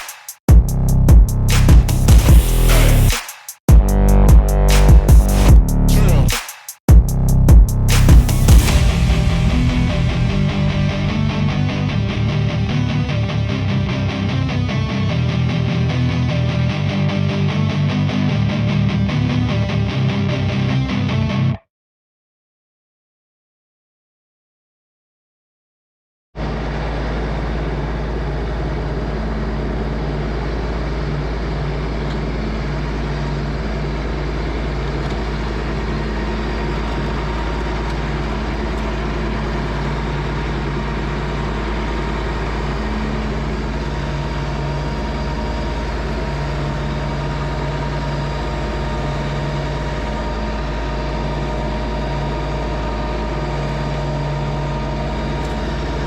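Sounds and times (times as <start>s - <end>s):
tractor diesel engine running: 7.0s - 14.0s, 26.4s - 56.0s.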